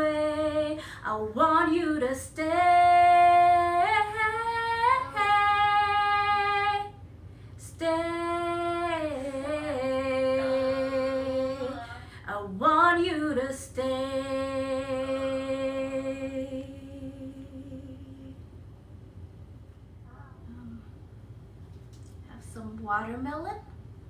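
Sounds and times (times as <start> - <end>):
woman singing without words: 0.0 - 7.0, 7.6 - 18.5.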